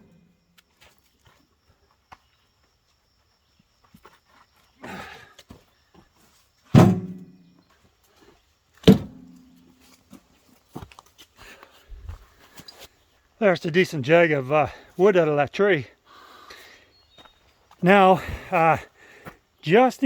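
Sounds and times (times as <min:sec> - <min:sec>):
loud wooden knocks ringing: 0:06.8 - 0:07.3.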